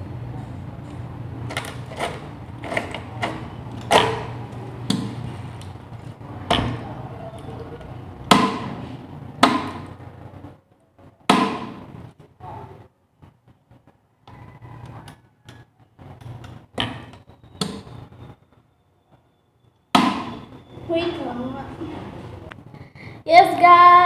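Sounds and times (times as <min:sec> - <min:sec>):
steady low hum: 0:00.0 - 0:18.7.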